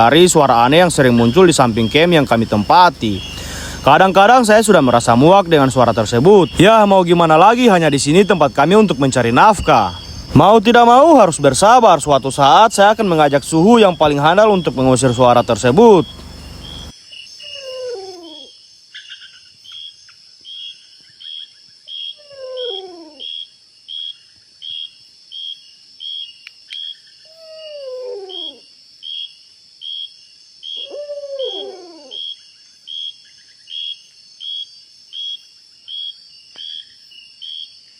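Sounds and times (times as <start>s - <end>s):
animal wailing call: 0.0s - 18.5s, 22.2s - 23.3s, 27.3s - 28.6s, 30.8s - 32.4s
night insects chirping: 0.0s - 37.9s.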